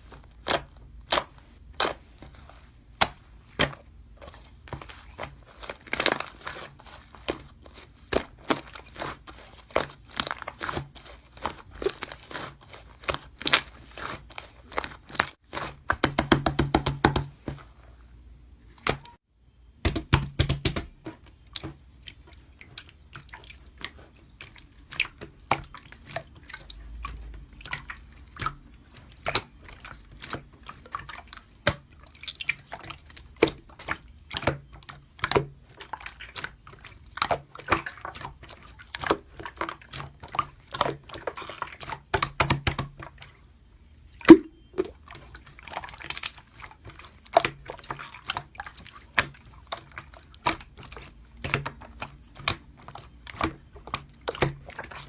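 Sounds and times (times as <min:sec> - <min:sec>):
air-bubble pops: 0:44.3 - 0:44.8.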